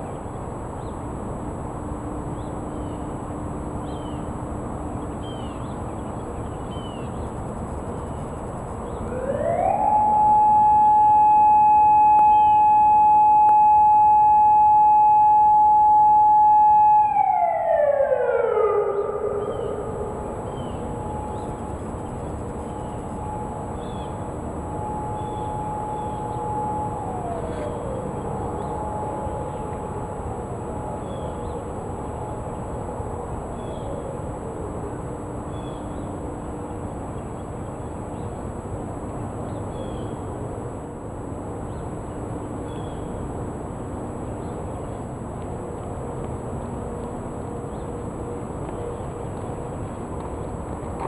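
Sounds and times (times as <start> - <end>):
background noise: 0.0 - 51.0
distant warning siren steady tone: 0.0 - 51.0
birds chirping faintly: 3.8 - 32.8
bird chirps: 5.0 - 7.4, 18.8 - 29.8, 31.0 - 31.7.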